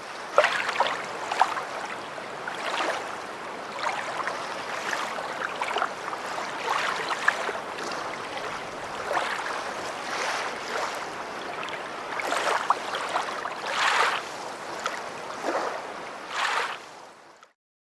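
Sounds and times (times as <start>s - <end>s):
lake waves splashing: 0.0s - 17.1s.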